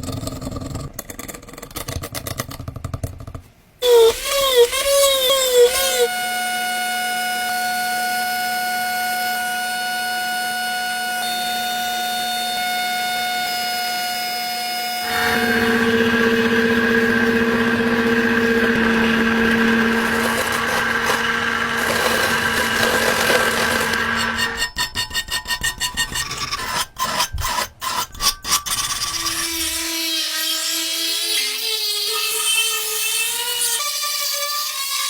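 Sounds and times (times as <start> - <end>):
power tool electric motor running: 3.8 - 14.0, 14.8 - 24.6.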